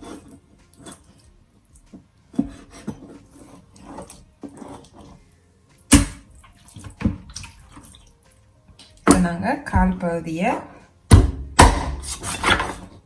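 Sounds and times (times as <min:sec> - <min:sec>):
knife scraping cutting board: 0:00.0 - 0:05.3, 0:11.8 - 0:13.0.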